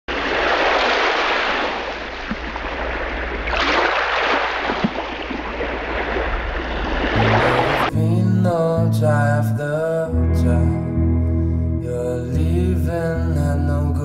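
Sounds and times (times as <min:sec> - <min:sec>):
wind rush: 0:00.1 - 0:07.9
engine drone: 0:07.1 - 0:09.2.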